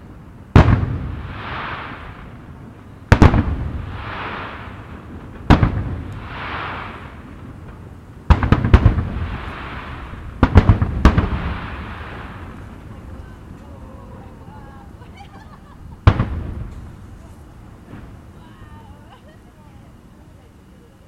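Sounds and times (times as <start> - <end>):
rolling rumble: 0.0 - 21.0
soft hiss: 0.0 - 21.0
firework shells bursting: 3.1 - 13.7, 15.8 - 18.4.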